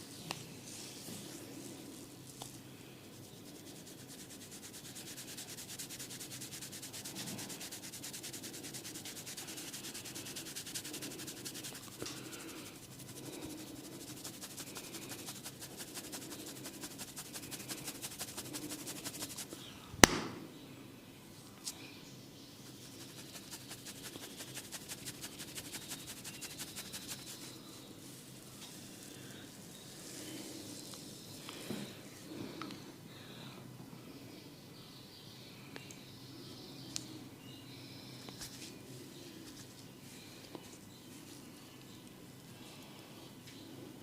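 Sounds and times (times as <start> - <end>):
fingers scratching through hair: 3.2 - 19.6, 22.6 - 27.6
sharp crack: 20.0 - 20.4.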